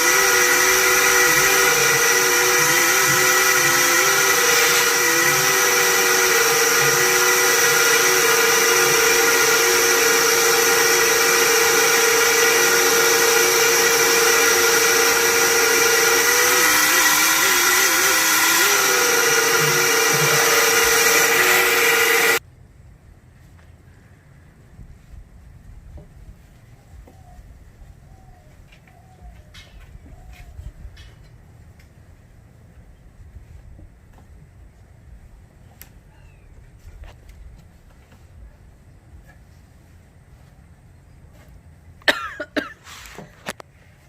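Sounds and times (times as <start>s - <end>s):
vacuum cleaner whining: 0.0s - 22.4s.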